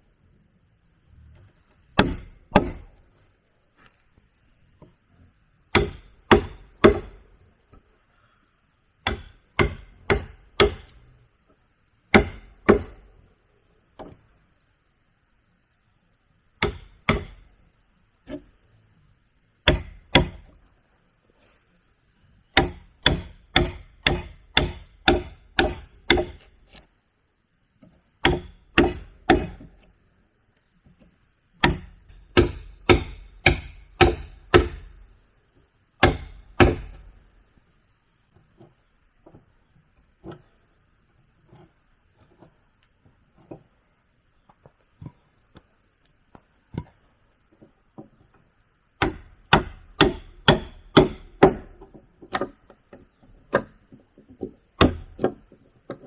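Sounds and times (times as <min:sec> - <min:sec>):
wood chopping strokes: 0:09.1 - 0:10.9, 0:12.1 - 0:13.0, 0:22.6 - 0:26.8, 0:28.2 - 0:29.8, 0:31.6 - 0:35.0, 0:49.0 - 0:52.6.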